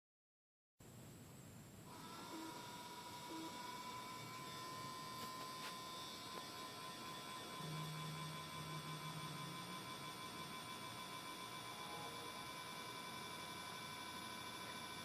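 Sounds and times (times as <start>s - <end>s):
faint high whines: 1.8s - 15.0s
high-pitched electronic tone: 5.9s - 13.1s.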